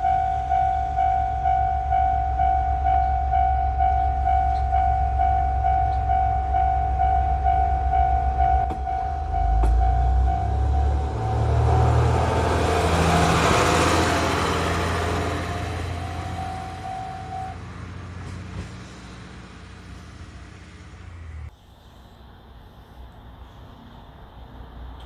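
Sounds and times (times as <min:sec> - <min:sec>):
crossing warning bell ringing: 0:00.0 - 0:17.8
diesel train passing: 0:00.0 - 0:25.0.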